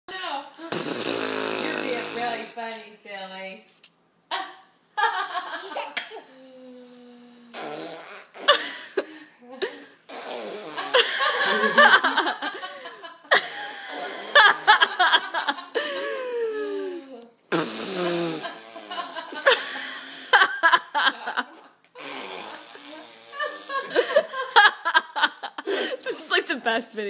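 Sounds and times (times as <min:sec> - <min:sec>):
baby blowing raspberries: 0:00.7 - 0:02.6, 0:05.8 - 0:08.6, 0:10.1 - 0:11.6, 0:13.8 - 0:14.7, 0:16.0 - 0:19.2, 0:22.0 - 0:24.0
baby laughing: 0:05.6 - 0:06.3.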